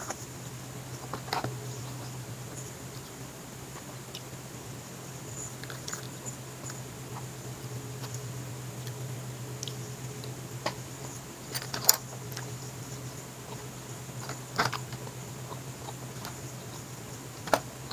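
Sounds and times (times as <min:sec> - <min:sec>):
steady low hum: 0:00.0 - 0:17.9
eating clicks and mouth smacks: 0:09.6 - 0:12.5.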